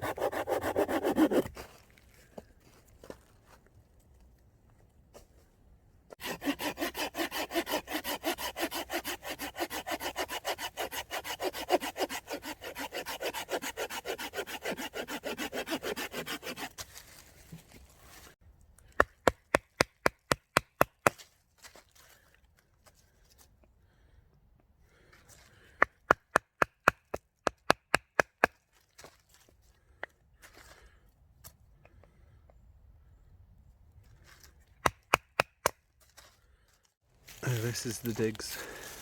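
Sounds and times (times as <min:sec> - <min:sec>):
hand saw cutting wood: 0:00.0 - 0:01.6, 0:06.1 - 0:16.9.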